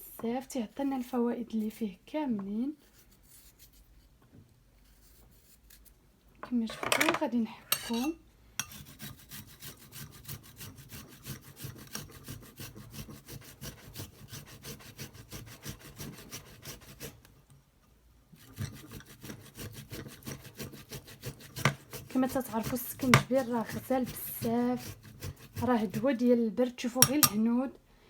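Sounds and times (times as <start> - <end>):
ginger rasped on hand grater: 0.3 - 2.0, 2.7 - 4.0, 8.6 - 17.3, 18.3 - 26.4, 27.0 - 27.4.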